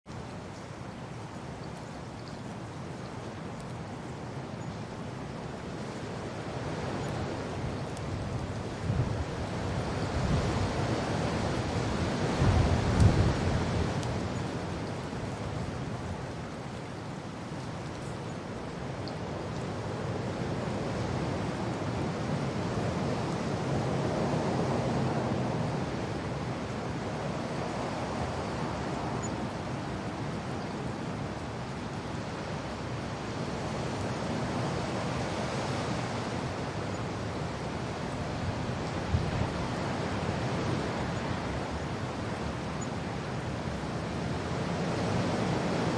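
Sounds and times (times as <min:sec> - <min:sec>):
rain falling: 0:00.1 - 0:45.9
wind blowing: 0:00.1 - 0:45.9.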